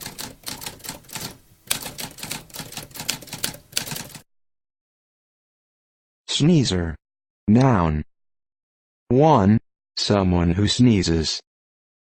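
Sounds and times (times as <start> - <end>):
typewriter keys clacking: 0.0 - 4.2.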